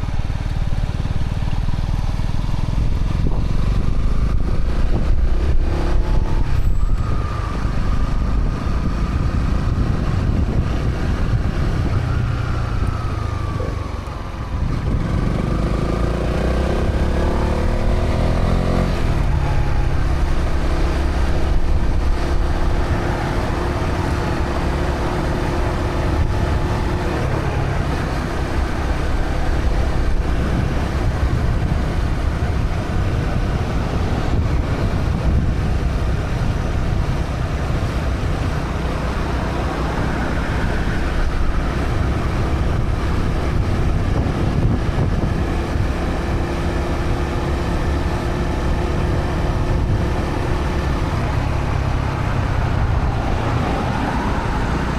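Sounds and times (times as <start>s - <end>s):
motorcycle engine running: 0.0s - 7.1s.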